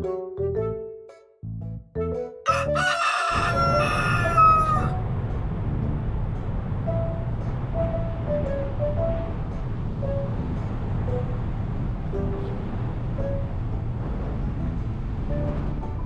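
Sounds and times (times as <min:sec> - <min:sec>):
rooster crowing: 0:02.5 - 0:05.0
low rumble: 0:04.9 - 0:16.0.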